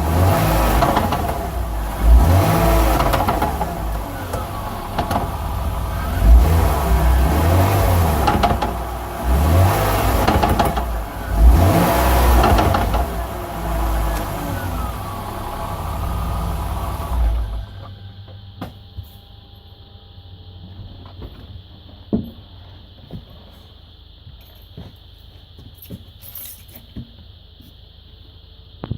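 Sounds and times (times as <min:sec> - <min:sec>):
car engine revving: 0:00.0 - 0:17.9
road noise: 0:00.0 - 0:17.9.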